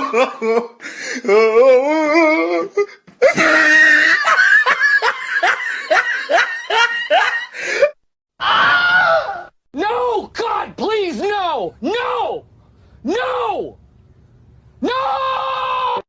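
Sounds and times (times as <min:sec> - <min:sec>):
person laughing exaggeratedly: 0:00.0 - 0:00.8, 0:02.2 - 0:08.0.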